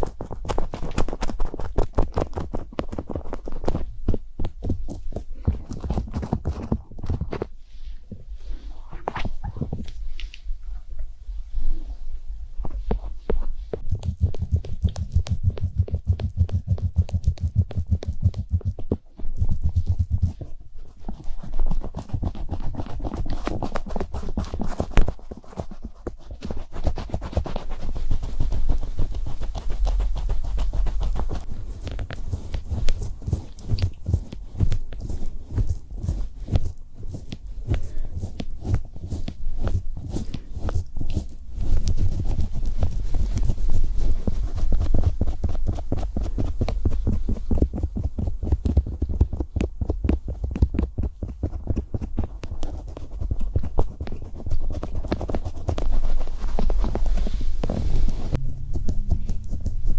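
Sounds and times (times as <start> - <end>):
tapping and scratching on microphone: 0.0 - 12.0, 12.6 - 59.9
heavy low thump: 58.3 - 59.9.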